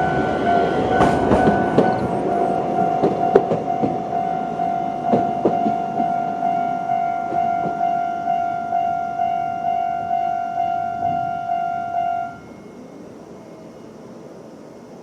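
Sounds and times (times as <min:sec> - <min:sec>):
tram wheels knocking on rails: 0:00.0 - 0:08.9
level-crossing warning bell: 0:00.0 - 0:14.8.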